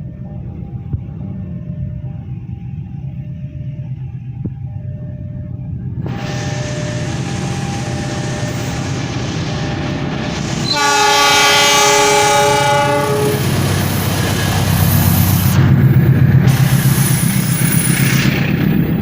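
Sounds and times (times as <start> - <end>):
train rumble: 0.0 - 19.0
locomotive multi-tone horn: 6.0 - 9.2, 10.5 - 14.0.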